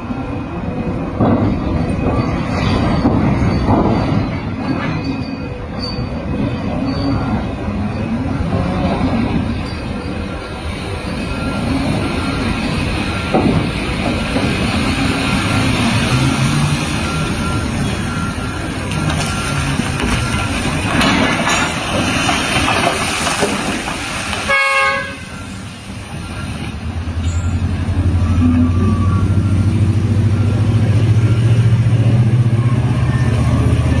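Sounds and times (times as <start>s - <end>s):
heavy machinery rumbling and clattering: 0.0s - 34.0s
low engine drone: 24.5s - 34.0s.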